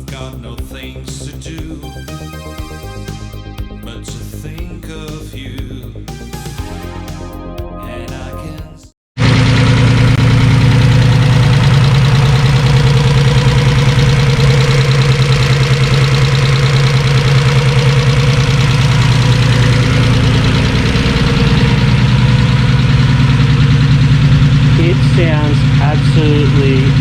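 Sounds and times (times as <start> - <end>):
turbo car engine idling: 9.2 - 27.0.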